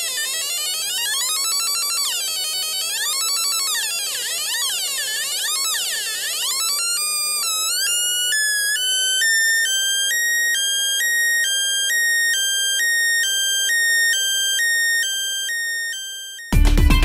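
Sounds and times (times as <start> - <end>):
electronic two-tone siren warble: 3.0 - 16.5.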